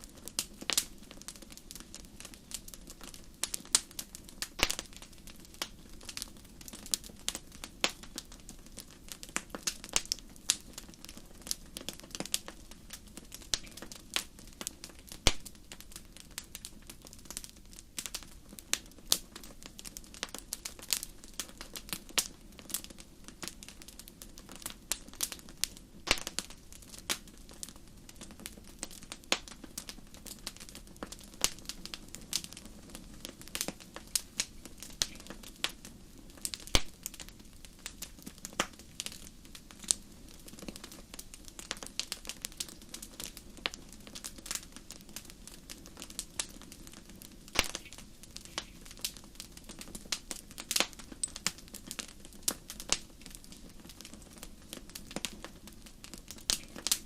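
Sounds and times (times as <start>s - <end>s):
low fire rumble: 0.0s - 57.0s
wood fire crackling: 0.0s - 57.0s.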